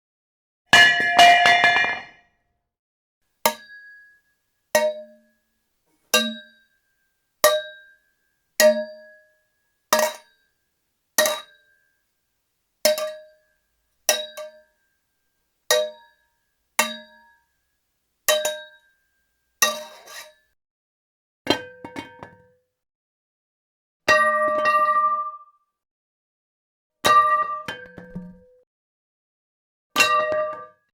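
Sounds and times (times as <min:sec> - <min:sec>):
metal pipe clanging on floor: 0:00.7 - 0:02.2, 0:10.0 - 0:10.4, 0:11.2 - 0:11.6, 0:19.6 - 0:20.4
pipe bouncing and rattling: 0:00.8 - 0:02.2.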